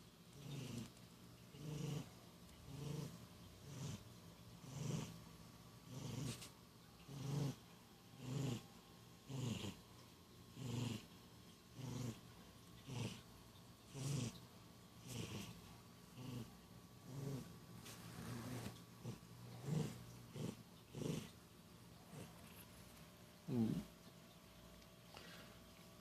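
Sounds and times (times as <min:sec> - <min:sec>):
cat snoring: 0:00.4 - 0:00.9, 0:01.5 - 0:04.0, 0:04.6 - 0:05.2, 0:05.8 - 0:06.5, 0:07.1 - 0:07.6, 0:08.2 - 0:09.8, 0:10.5 - 0:11.1, 0:11.7 - 0:12.2, 0:12.8 - 0:13.2, 0:13.9 - 0:14.4, 0:15.0 - 0:21.3, 0:23.5 - 0:23.9.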